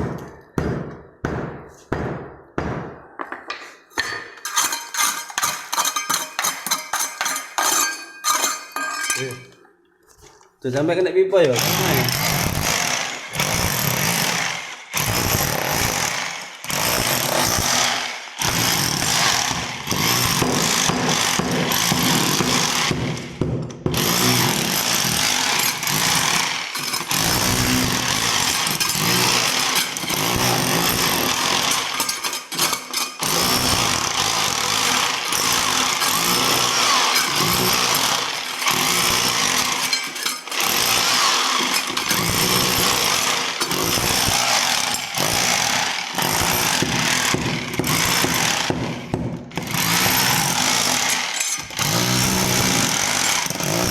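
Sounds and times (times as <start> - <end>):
electric drill running: 24.0 - 32.1, 33.2 - 48.8, 49.6 - 53.9.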